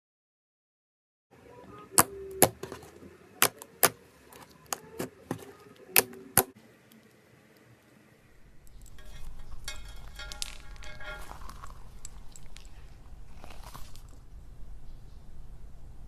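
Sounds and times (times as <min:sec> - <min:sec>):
squishing slime crackle: 0:10.6 - 0:14.4.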